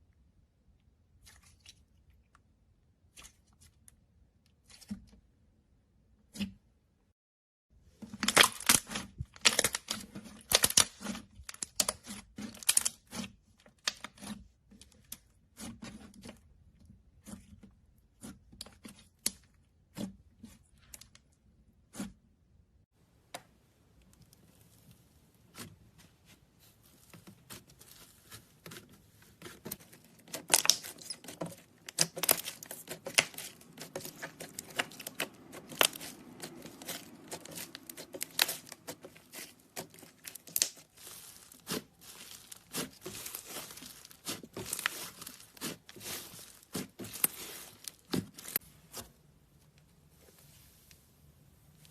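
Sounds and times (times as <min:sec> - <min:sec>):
slime popping and crackling: 0:08.2 - 0:12.9, 0:29.4 - 0:48.6.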